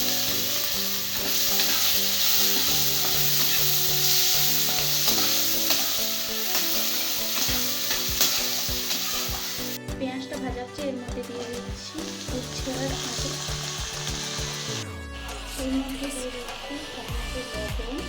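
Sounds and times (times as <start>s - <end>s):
onion sizzling in hot oil: 0.0s - 9.8s, 11.2s - 14.8s
spatula scraping pan: 0.0s - 9.8s.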